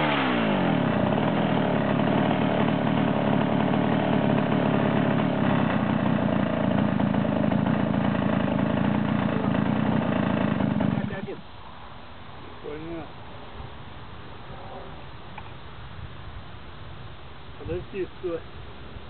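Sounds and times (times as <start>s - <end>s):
chainsaw cutting through log: 0.0s - 11.4s.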